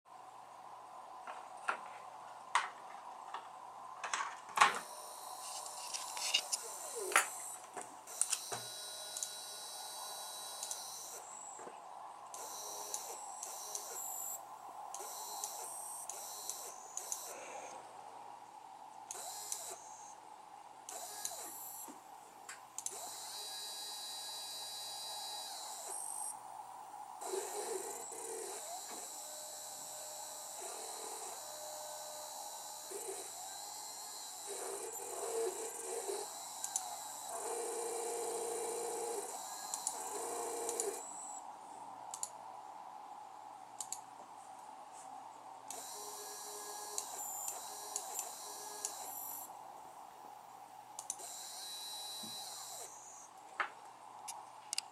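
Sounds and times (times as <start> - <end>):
faint constant tone: 0.1 - 54.9
faint motor hum: 4.8 - 43.0, 45.3 - 53.4
stepper motor whining: 27.2 - 41.4.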